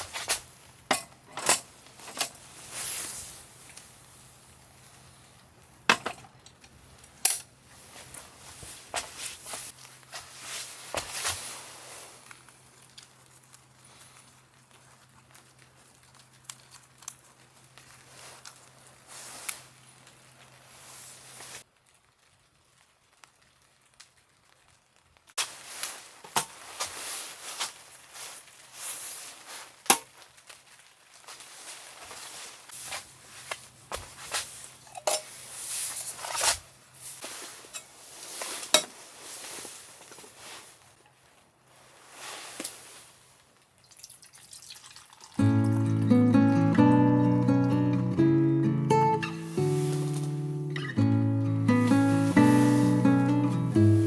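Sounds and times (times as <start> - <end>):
camping gear rustling and knocking: 0.0 - 3.8, 5.8 - 11.9.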